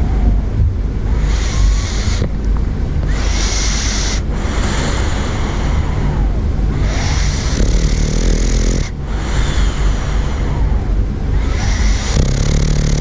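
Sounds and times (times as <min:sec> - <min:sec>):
bulldog snoring loudly: 0:01.0 - 0:13.0.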